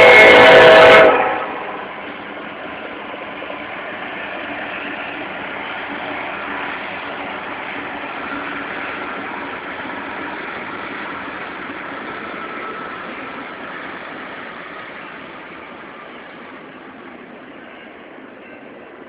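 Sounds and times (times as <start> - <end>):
freight train passing: 0.0 - 19.0.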